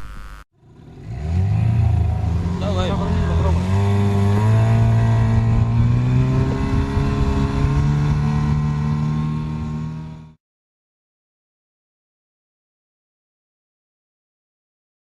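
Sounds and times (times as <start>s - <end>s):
vehicle engine running: 0.0s - 10.4s.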